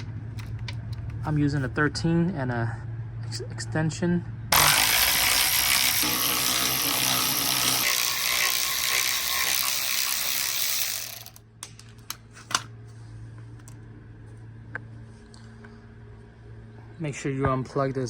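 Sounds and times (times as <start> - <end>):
ratchet wrench ratcheting: 4.6 - 11.4.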